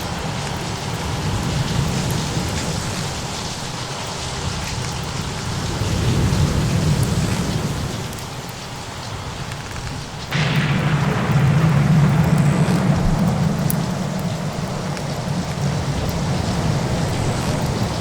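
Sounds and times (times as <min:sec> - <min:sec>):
heavy rain: 0:00.0 - 0:18.0
thunder rolling: 0:10.3 - 0:18.0.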